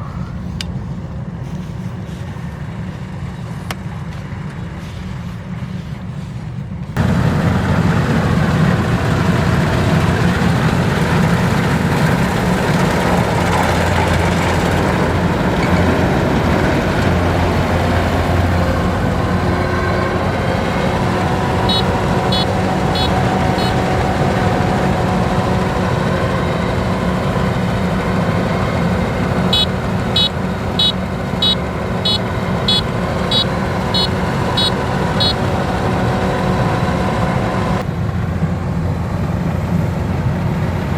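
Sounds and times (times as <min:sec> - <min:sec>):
diesel engine running under load: 0:00.0 - 0:40.9
short high electronic beeps: 0:21.7 - 0:23.8, 0:29.5 - 0:35.4.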